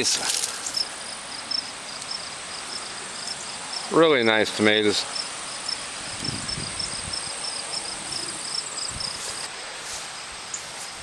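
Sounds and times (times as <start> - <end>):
plants rustling: 0.0 - 3.5, 7.8 - 11.0
high insect trill: 0.0 - 11.0
insects chirping: 0.0 - 11.0.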